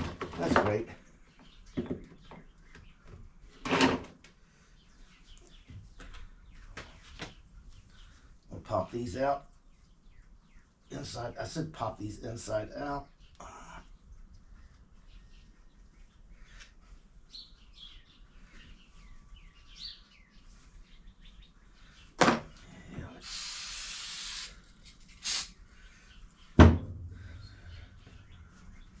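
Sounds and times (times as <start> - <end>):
faint birds chirping: 0.0 - 29.0
air hiss: 23.2 - 25.6
loud sharp thunk: 26.6 - 27.1.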